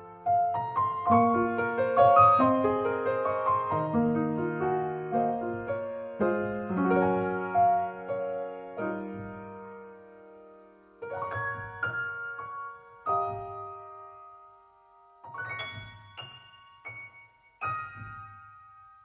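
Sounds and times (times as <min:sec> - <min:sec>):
soft piano chords: 0:00.0 - 0:19.0.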